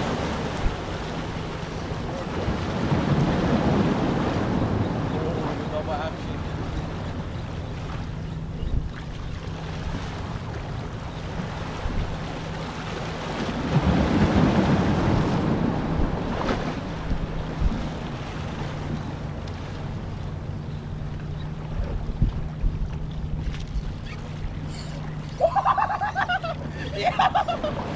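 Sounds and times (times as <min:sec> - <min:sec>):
wind buffeting microphone: 0:00.0 - 0:19.2, 0:21.0 - 0:27.9
boat motor humming: 0:00.0 - 0:27.9
water washing: 0:22.9 - 0:27.9.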